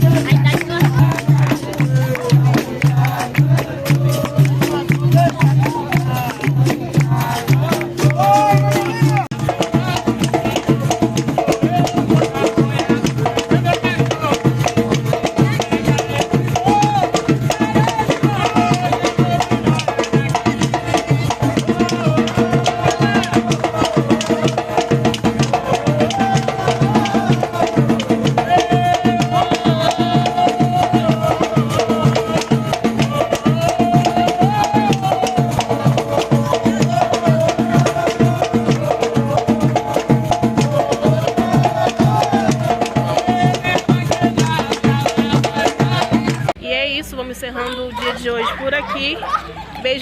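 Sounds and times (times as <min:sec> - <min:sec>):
hand percussion beat: 0:00.0 - 0:47.0
person singing: 0:15.5 - 0:46.5.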